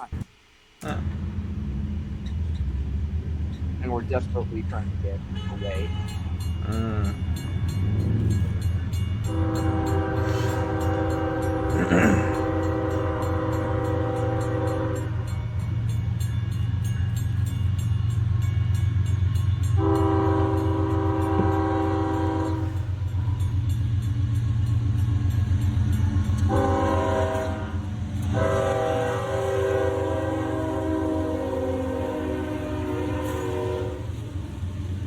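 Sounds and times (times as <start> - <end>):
moving train rumble: 0.0 - 35.0
locomotive air horn blasts: 5.2 - 6.9, 9.2 - 15.4, 19.8 - 23.0, 26.4 - 34.4.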